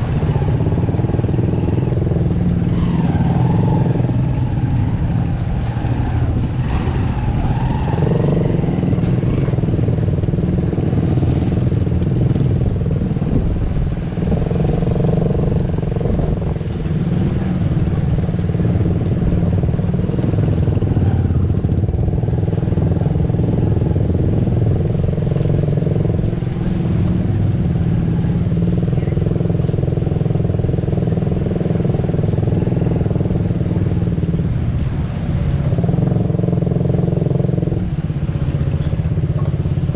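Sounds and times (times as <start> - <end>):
vehicle engine rumbling: 0.0 - 39.9.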